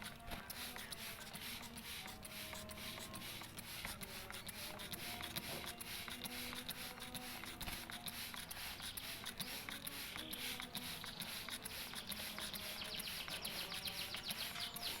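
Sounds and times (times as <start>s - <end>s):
light clicking and patter: 0.0s - 15.0s
bird chirping high-pitched: 12.0s - 15.0s.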